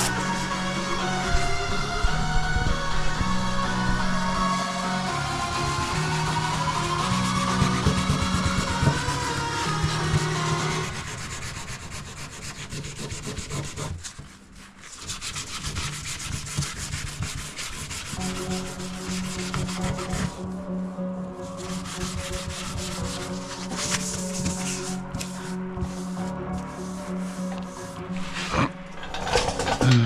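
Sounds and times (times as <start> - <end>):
sanding car panel: 5.6 - 20.6, 21.4 - 28.5.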